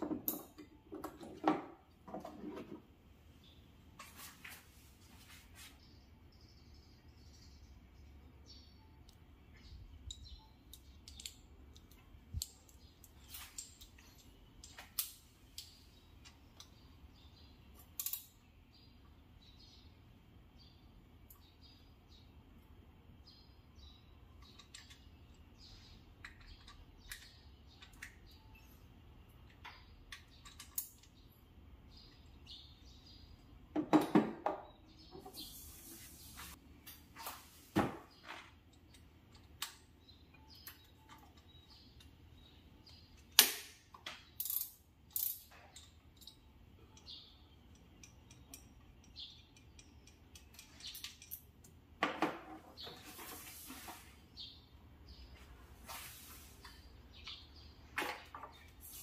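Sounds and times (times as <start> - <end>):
hand tools clicking and knocking: 43.1 - 53.0.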